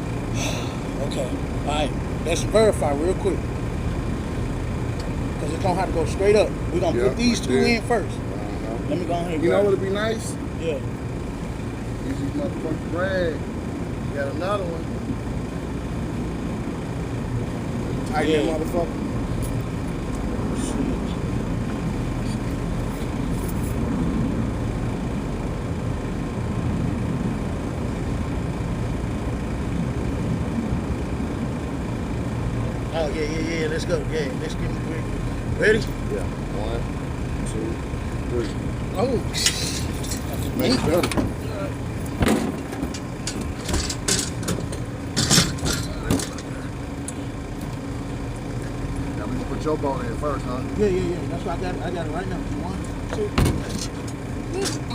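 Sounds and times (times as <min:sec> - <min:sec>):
engine drone: 0:00.0 - 0:54.9
low machine hum: 0:00.0 - 0:54.9
equipment knocks and clanks: 0:42.2 - 0:46.5, 0:53.1 - 0:54.0.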